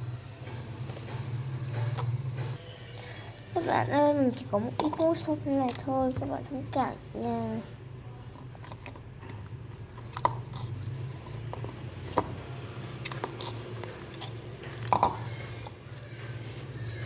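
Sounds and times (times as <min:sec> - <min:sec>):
slime squishing: 0:08.3 - 0:17.0.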